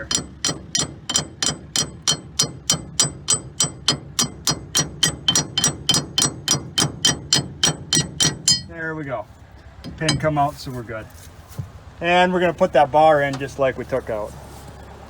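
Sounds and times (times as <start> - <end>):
metal bar striking steel pin: 0.0 - 8.7, 9.8 - 10.4.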